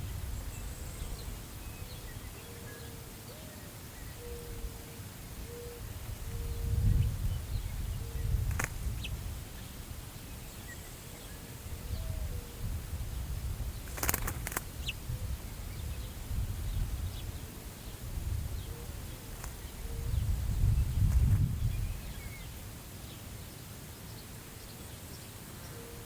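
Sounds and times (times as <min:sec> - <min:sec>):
faint bird chirps: 0:00.0 - 0:12.7
wind buffeting microphone: 0:05.4 - 0:10.3, 0:11.7 - 0:22.8
sharp clicks: 0:13.9 - 0:14.7.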